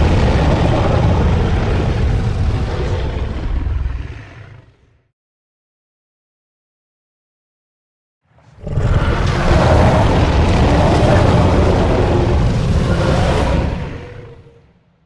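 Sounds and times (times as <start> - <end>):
creature roar with low rumble: 0.0 - 5.1, 8.4 - 14.9.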